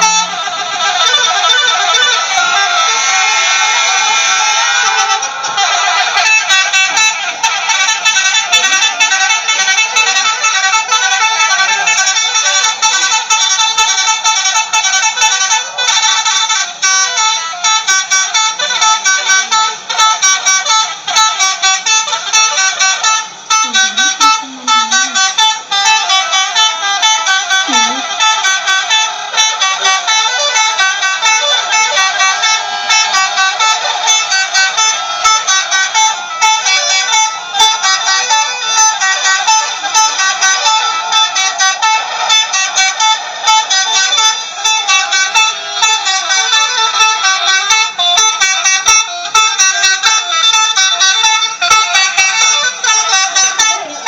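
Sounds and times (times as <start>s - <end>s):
multi-tone bus horns: 0.0s - 54.0s.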